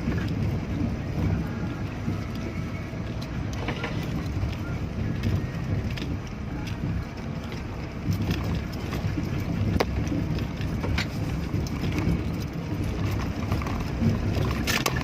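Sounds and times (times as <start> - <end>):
engine and drivetrain rumble: 0.0 - 15.0
vehicle body knocks and rattles: 3.4 - 15.0.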